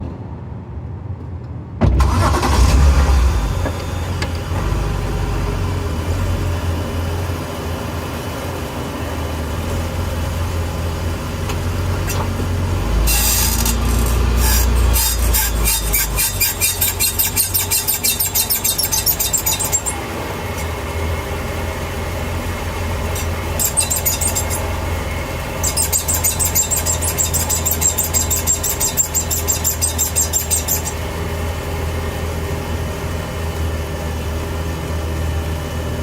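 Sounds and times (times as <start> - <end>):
car engine starting and running: 1.2 - 36.0
high pulsing squeal: 2.2 - 6.7, 12.0 - 31.5.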